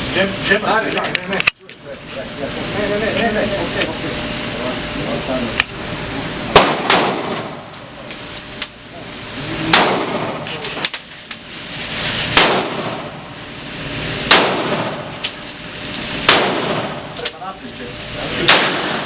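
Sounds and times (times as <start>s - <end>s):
loud gunshots ringing off walls: 6.5s - 7.5s, 9.7s - 10.4s, 12.3s - 13.2s, 14.2s - 15.1s, 16.2s - 17.1s, 18.5s - 19.0s.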